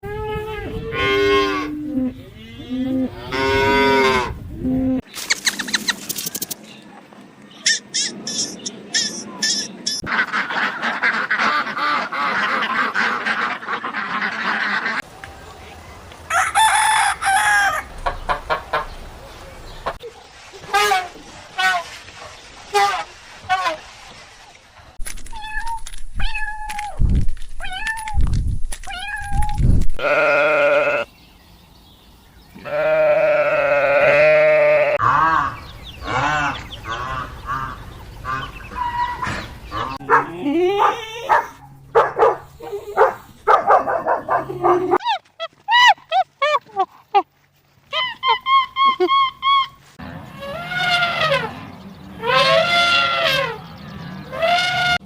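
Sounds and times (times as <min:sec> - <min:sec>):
cattle mooing: 0:00.6 - 0:05.0.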